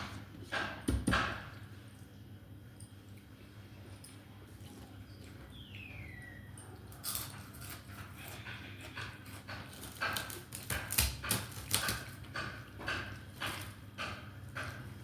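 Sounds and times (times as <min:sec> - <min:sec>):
person chewing and crunching: 0:07.2 - 0:12.0.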